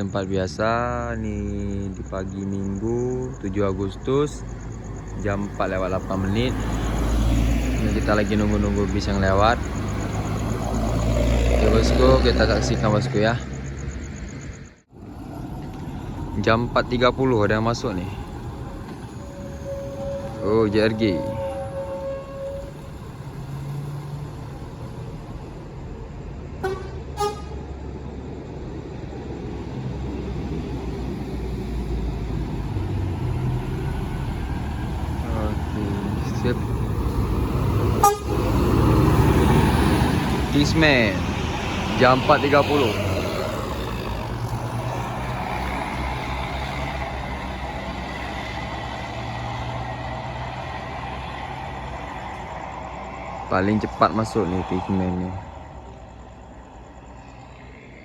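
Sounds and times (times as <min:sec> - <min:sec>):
bus engine rumble: 0:00.0 - 0:58.0
bus horn toots: 0:18.9 - 0:23.8, 0:26.6 - 0:27.8, 0:37.9 - 0:38.8.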